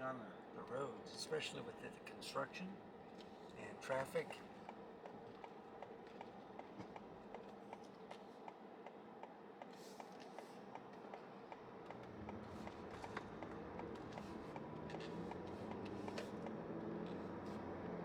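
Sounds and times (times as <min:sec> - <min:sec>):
engine and road rumble: 0:00.4 - 0:18.0
turn signal ticking: 0:08.4 - 0:17.5.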